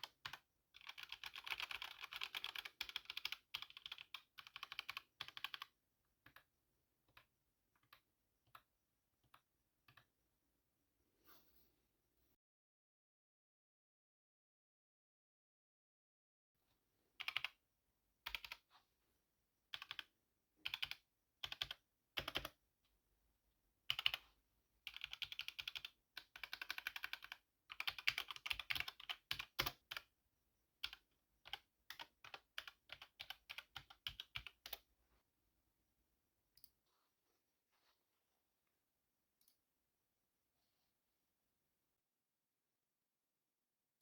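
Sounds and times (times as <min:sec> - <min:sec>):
typing on mechanical keyboard: 0:00.0 - 0:06.5, 0:17.2 - 0:17.6, 0:18.3 - 0:18.6, 0:19.7 - 0:22.6, 0:23.9 - 0:24.2, 0:24.8 - 0:30.1, 0:30.8 - 0:34.8.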